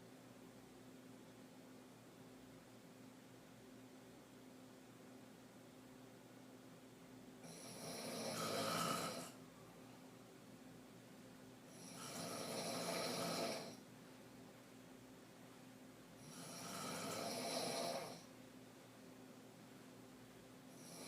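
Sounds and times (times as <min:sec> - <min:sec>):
woman snoring: 0:07.4 - 0:09.4, 0:11.7 - 0:13.8, 0:16.2 - 0:18.3, 0:20.7 - 0:21.0.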